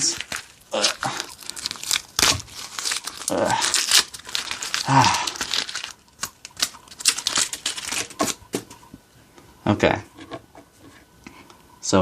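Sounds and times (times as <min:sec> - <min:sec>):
adhesive tape peeling and ripping: 0:00.0 - 0:08.4.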